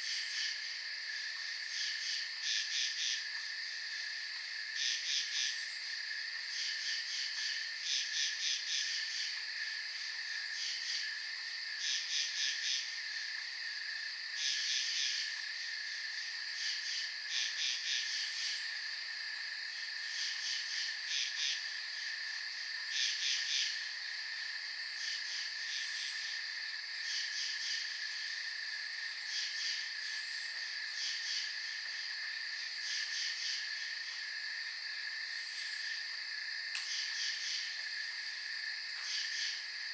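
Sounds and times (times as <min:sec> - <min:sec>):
crickets chorus: 0:00.0 - 0:39.9
rapid pulsed insect chirps: 0:22.8 - 0:39.9.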